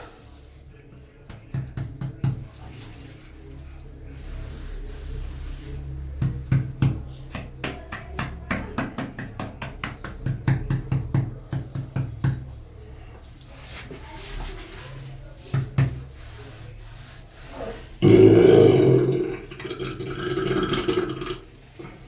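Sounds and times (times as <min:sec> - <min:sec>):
soft rubbing hiss: 0:02.4 - 0:06.1, 0:12.9 - 0:18.0.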